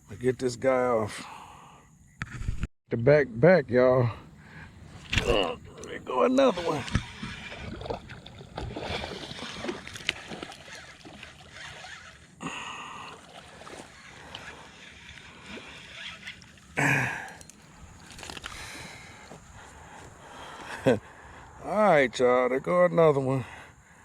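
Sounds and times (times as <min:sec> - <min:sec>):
water splashing and sloshing: 0:06.5 - 0:16.8.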